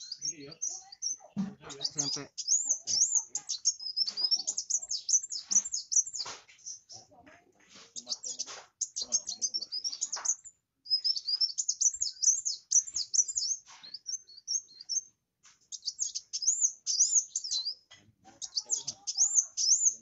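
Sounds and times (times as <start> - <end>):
sunbird twittering: 0.0 - 7.1, 7.7 - 20.0.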